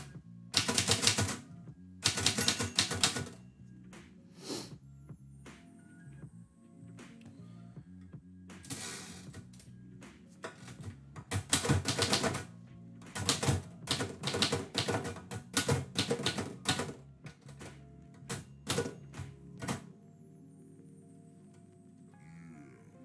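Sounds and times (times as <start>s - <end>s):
quiet background music: 0.0s - 23.0s
typewriter keys clacking: 0.6s - 1.4s, 2.0s - 3.4s, 10.4s - 12.5s, 13.1s - 19.9s.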